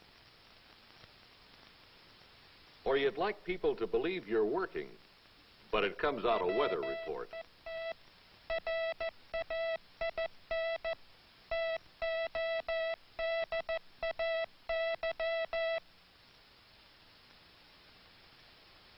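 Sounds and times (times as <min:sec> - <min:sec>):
morse code tone: 0:06.2 - 0:15.8.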